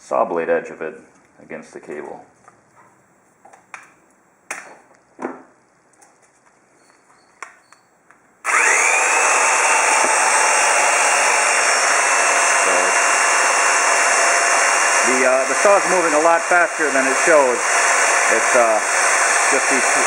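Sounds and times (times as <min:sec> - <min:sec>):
scroll saw running: 0:08.4 - 0:20.0.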